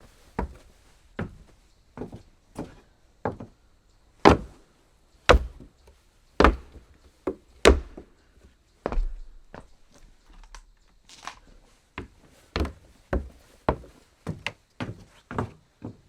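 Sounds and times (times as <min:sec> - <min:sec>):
footsteps on wooden floor: 0:00.3 - 0:03.5, 0:04.2 - 0:04.6, 0:05.3 - 0:05.7, 0:06.4 - 0:10.2, 0:12.0 - 0:16.0.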